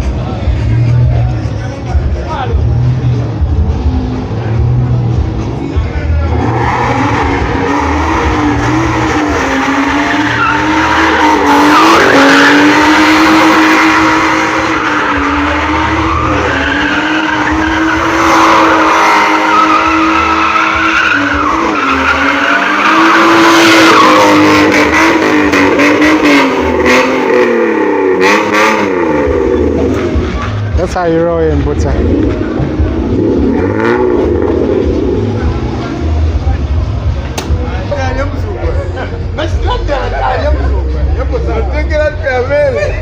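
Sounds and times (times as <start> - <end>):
tyres skidding and squealing: 0.0 - 43.0
car engine at high revs: 2.6 - 30.8, 31.6 - 37.6.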